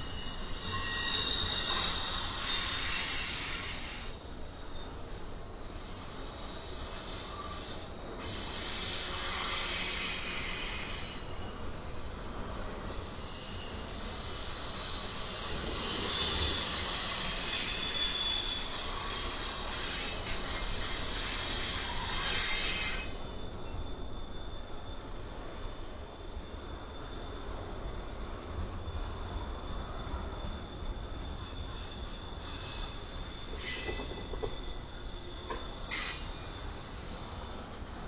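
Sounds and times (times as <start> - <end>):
wheels squealing: 0.0 - 4.9, 12.7 - 24.3, 26.9 - 37.7
freight train rolling on rails: 0.0 - 38.0.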